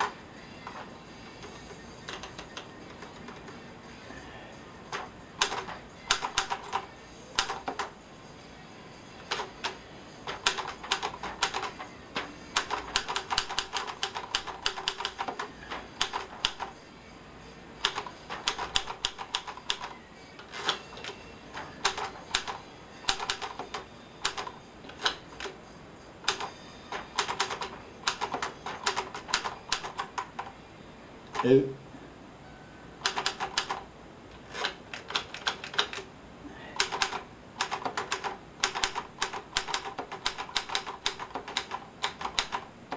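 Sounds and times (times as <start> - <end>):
typewriter key strikes: 5.4 - 7.9, 9.3 - 11.8, 12.6 - 16.7, 17.8 - 25.5, 26.3 - 30.5, 33.0 - 33.8, 34.5 - 36.0, 36.8 - 42.6.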